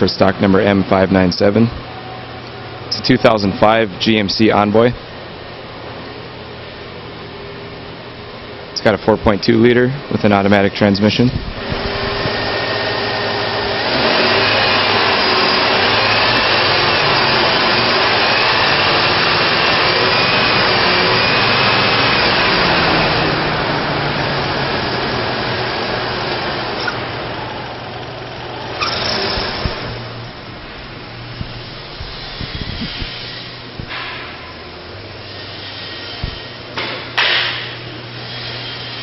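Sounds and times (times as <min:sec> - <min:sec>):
car engine running: 0:11.4 - 0:34.9.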